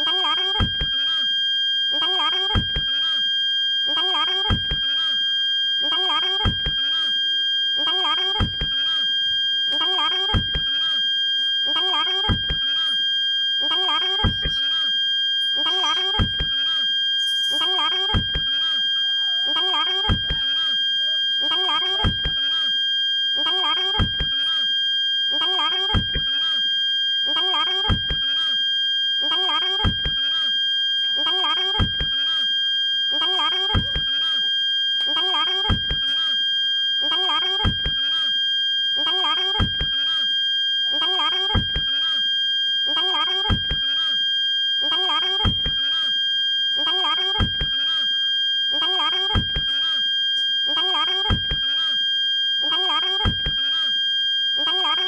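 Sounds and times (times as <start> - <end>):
parking sensor steady buzzer: 0.0 - 55.0.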